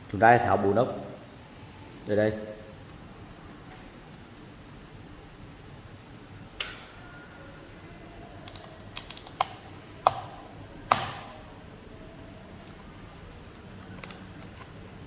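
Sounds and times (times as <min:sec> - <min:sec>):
screwdriver clicks and taps: 0:08.5 - 0:11.3.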